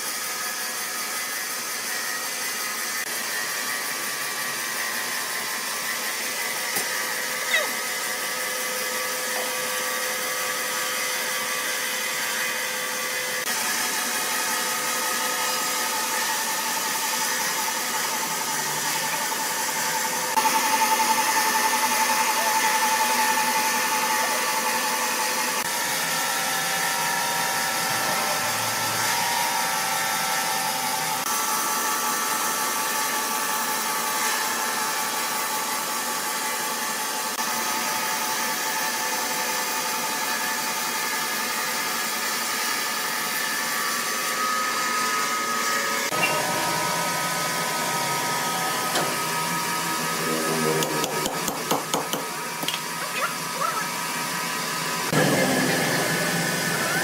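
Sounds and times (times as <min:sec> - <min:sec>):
sawmill machinery running: 0:00.0 - 0:57.0
high mechanical whine: 0:42.9 - 0:51.6, 0:52.3 - 0:57.0.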